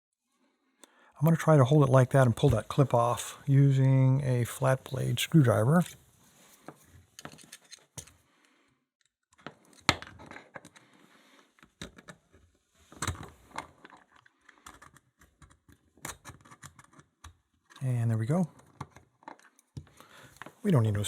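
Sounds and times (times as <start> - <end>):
screwdriver metal clicks and scrapes: 7.2 - 8.2.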